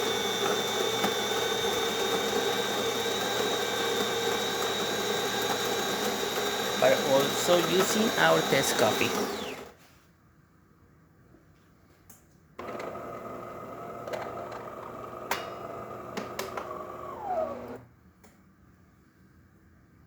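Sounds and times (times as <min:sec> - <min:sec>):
espresso machine motor whining: 0:00.0 - 0:09.7, 0:12.6 - 0:17.9.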